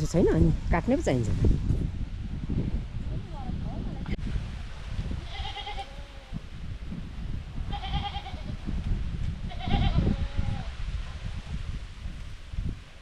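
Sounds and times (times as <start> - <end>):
goat bleating: 5.2 - 6.2, 7.7 - 8.5, 9.5 - 10.5.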